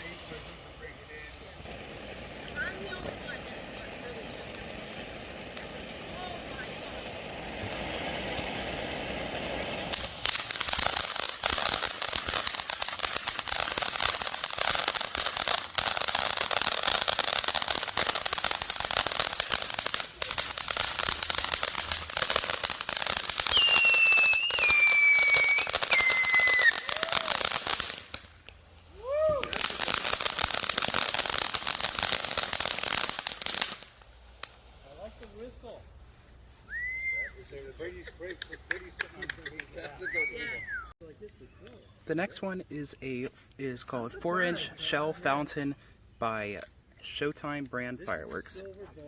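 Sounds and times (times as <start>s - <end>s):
firework crackling: 0.0s - 40.8s
firework hissing: 0.0s - 40.8s
firework squealing whistles: 17.6s - 28.0s, 35.4s - 37.8s, 40.0s - 41.0s.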